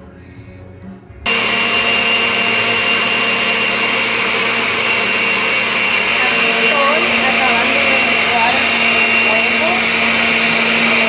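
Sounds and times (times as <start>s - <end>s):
blender motor whining: 1.3s - 11.0s.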